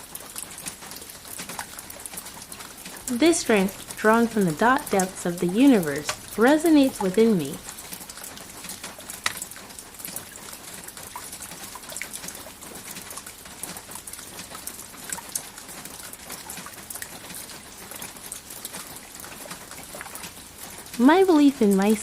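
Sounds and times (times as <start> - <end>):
steady rain falling: 0.0 - 22.0
single raindrop ticks: 7.6 - 20.4.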